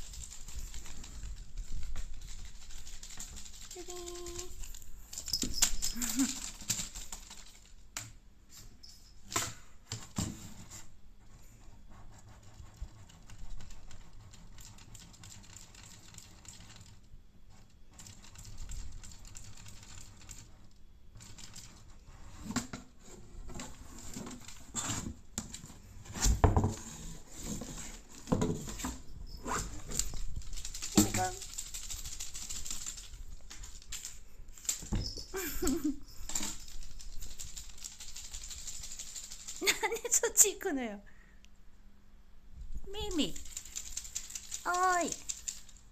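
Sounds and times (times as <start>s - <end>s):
crinkle paper rustling: 0.0s - 7.9s, 27.1s - 40.3s.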